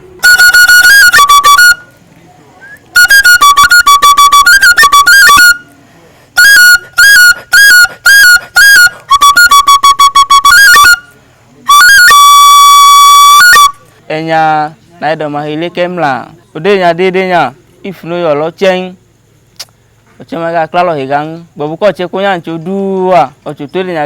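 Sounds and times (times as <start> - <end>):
shrill whistle playing: 0.2 - 2.0, 2.6 - 5.8, 6.4 - 13.8.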